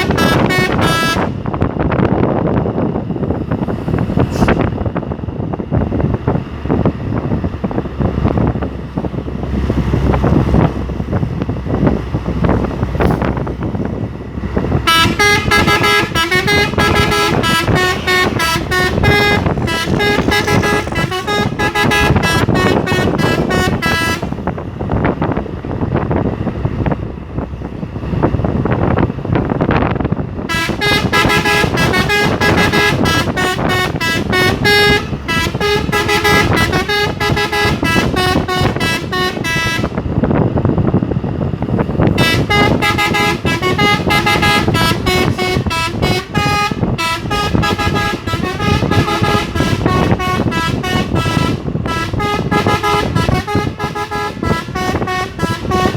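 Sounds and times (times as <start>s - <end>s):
musical air horn tune: 0.0s - 1.4s, 14.8s - 24.4s, 30.5s - 40.0s, 42.2s - 55.9s
road noise: 0.0s - 55.9s
truck engine: 0.0s - 55.9s.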